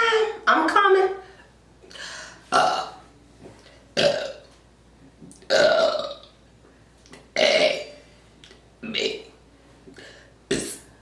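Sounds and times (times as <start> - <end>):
woman burping: 2.5 - 3.0, 4.0 - 4.4, 5.5 - 6.3, 7.4 - 8.0.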